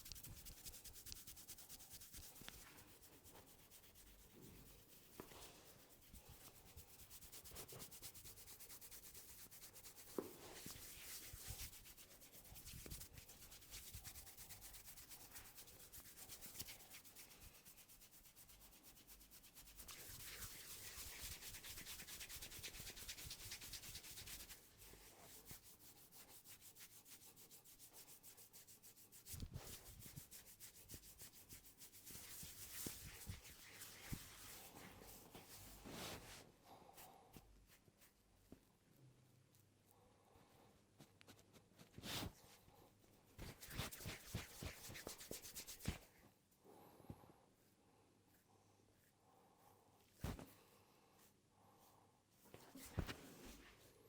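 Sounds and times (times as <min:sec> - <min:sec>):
fingers rubbing through hair: 0:00.0 - 0:36.4, 0:43.4 - 0:46.1.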